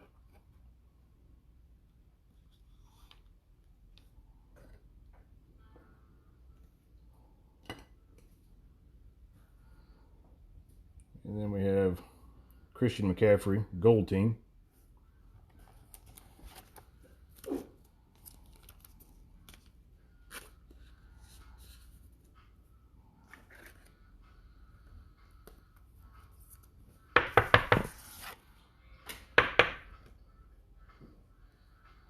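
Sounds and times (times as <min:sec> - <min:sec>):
trading cards rustling: 0:15.6 - 0:22.0.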